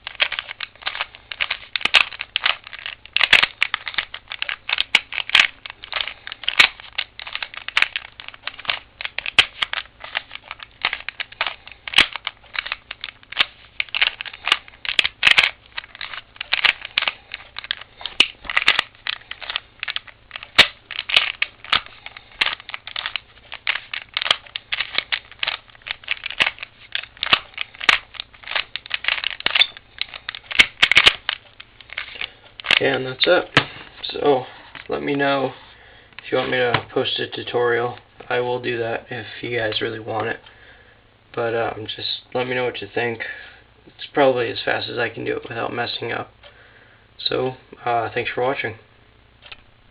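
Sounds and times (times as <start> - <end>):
puzzle cube plastic clicks: 0.0 - 33.8, 49.4 - 49.6.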